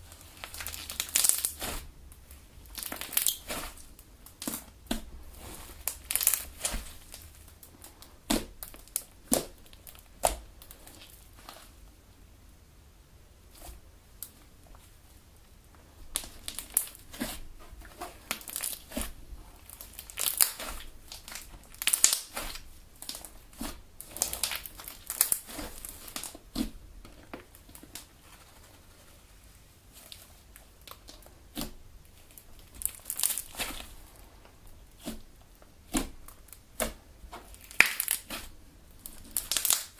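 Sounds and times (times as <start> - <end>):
slime being kneaded by hand: 0.0 - 11.9, 13.4 - 39.9.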